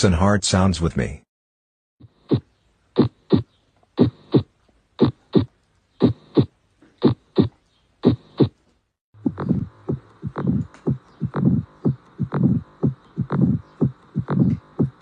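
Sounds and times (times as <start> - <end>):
heartbeat thumps: 2.0 - 8.6, 9.2 - 15.0
low hum: 9.2 - 15.0.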